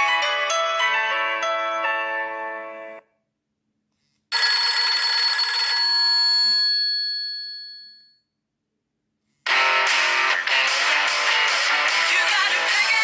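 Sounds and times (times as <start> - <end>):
melodic phone ringtone: 4.3 - 8.2
bell-like ringing tone: 4.4 - 8.3.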